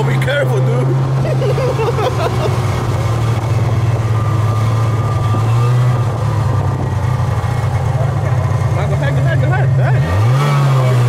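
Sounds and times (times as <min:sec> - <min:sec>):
snowmobile engine humming: 0:00.0 - 0:11.0.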